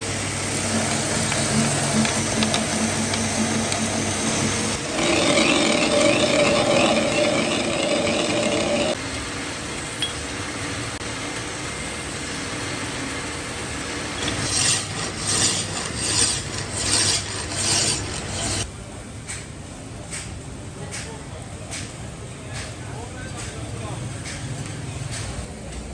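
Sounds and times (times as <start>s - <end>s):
metal lathe grinding and rasping: 0.0s - 9.0s, 14.2s - 18.7s.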